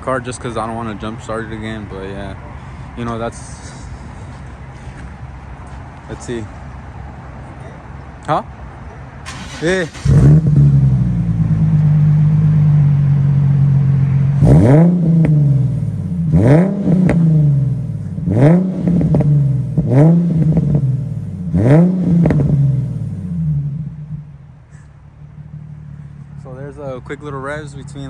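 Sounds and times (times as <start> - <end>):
car engine idling and revving: 9.2 - 28.0.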